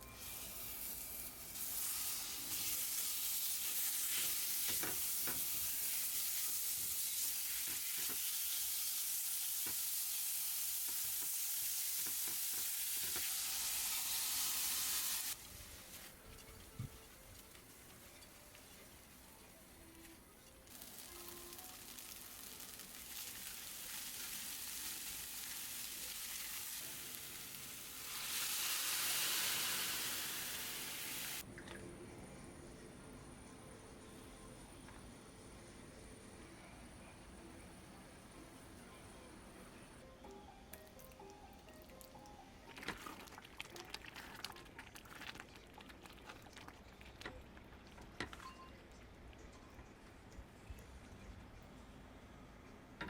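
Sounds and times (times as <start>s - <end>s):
food sizzling in a pan: 0.0s - 31.4s.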